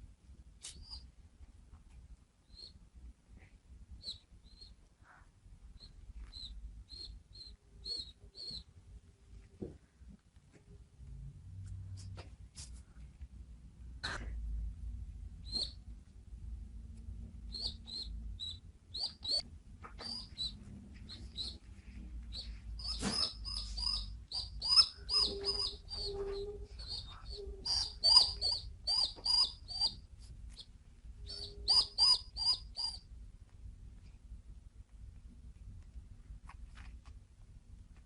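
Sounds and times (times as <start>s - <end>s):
baby pigeon peeping: 0.6s - 1.1s, 2.4s - 2.9s, 4.0s - 9.5s, 15.4s - 15.9s, 17.0s - 33.1s.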